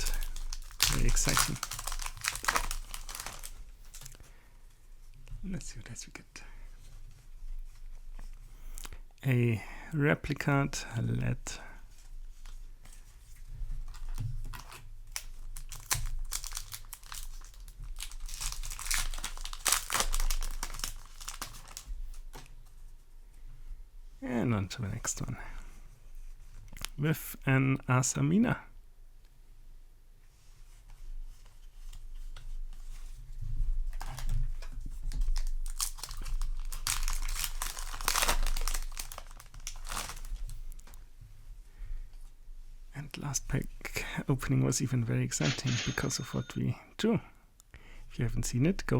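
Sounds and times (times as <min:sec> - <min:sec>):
foil wrapper crinkling: 0:00.0 - 0:04.2, 0:13.8 - 0:22.5, 0:35.0 - 0:41.0.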